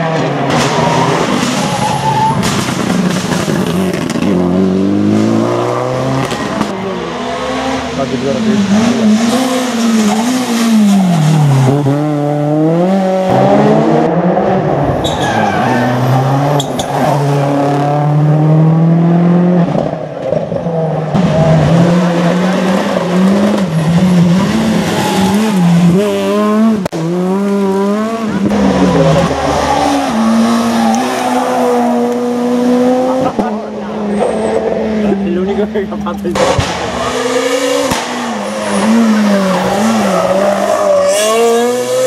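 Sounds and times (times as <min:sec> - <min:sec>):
rally car engine revving: 0:00.0 - 0:42.0.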